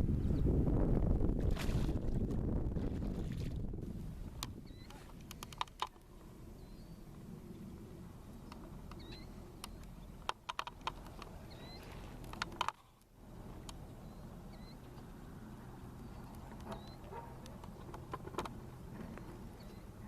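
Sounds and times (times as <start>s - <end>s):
steady low rumble: 0.0s - 5.4s
small bird chirping: 4.6s - 5.0s, 8.5s - 10.2s, 11.1s - 12.1s, 13.8s - 17.1s
sharp clicks and knocks: 9.6s - 11.4s, 17.4s - 19.3s.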